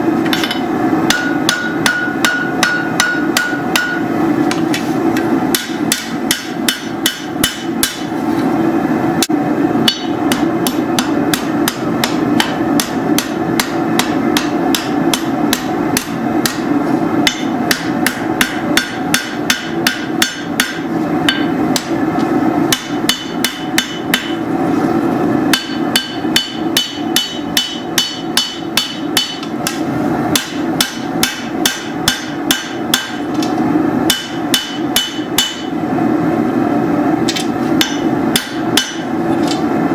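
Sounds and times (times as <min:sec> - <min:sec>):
hammer ringing on anvil: 0:00.3 - 0:04.6, 0:05.5 - 0:08.1, 0:09.9 - 0:21.9, 0:22.7 - 0:24.4, 0:25.5 - 0:33.3, 0:34.1 - 0:35.8, 0:37.3 - 0:39.1.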